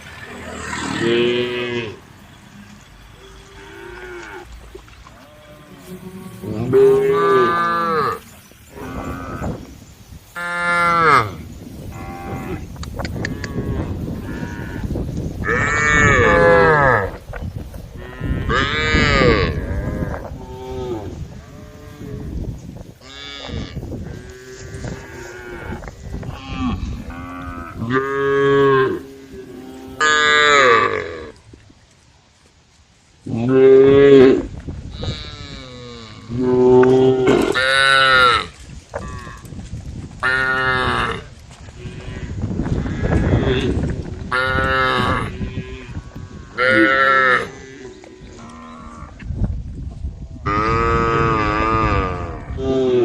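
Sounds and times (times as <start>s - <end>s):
cows mooing: 0.0s - 9.7s, 10.4s - 17.2s, 18.0s - 22.4s, 23.0s - 31.4s, 33.4s - 39.5s, 40.2s - 49.2s
cattle mooing: 0.1s - 4.5s, 5.1s - 9.6s.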